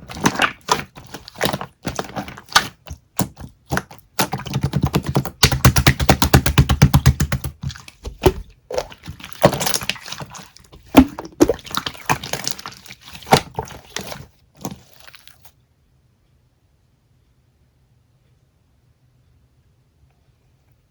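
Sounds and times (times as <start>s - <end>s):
crackly taps: 1.4s - 8.5s.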